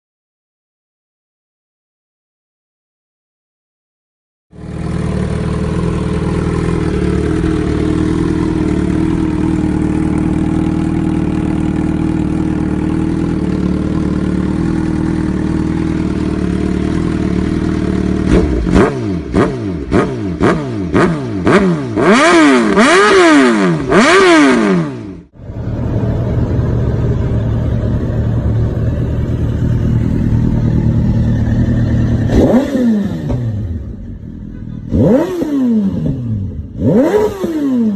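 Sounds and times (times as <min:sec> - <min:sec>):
motorcycle engine idling: 0:04.6 - 0:37.9
motorcycle throttle revs: 0:04.6 - 0:37.9.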